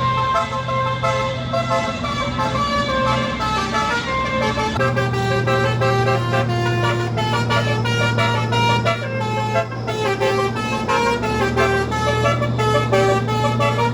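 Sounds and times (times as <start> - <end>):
multi-tone air horn melody: 0.0 - 13.9.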